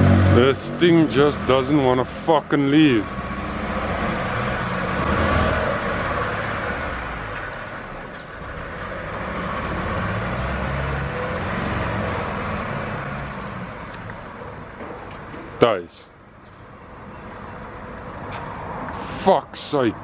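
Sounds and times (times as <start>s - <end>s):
misfiring engine revving unevenly: 0.0s - 7.6s, 8.5s - 14.1s.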